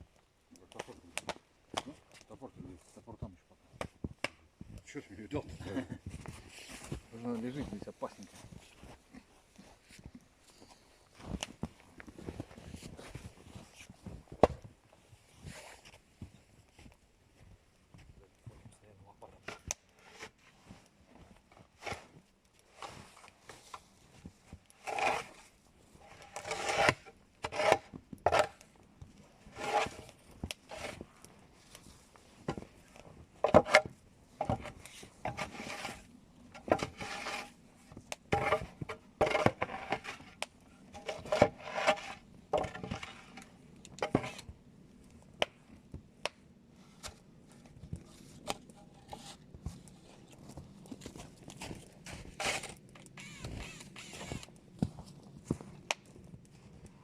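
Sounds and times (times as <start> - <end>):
wood scraping and rubbing: 24.8 - 25.4, 26.0 - 28.6, 29.5 - 31.1, 33.4 - 37.6, 38.3 - 44.5, 49.0 - 49.5, 52.1 - 54.4.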